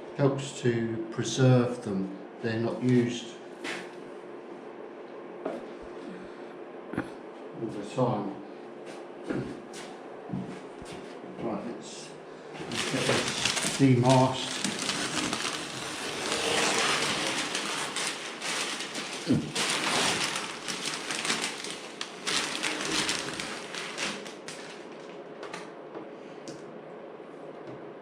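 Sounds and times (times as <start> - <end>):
masking tape peeling: 12.6 - 25.1
tape crinkles: 12.6 - 25.2.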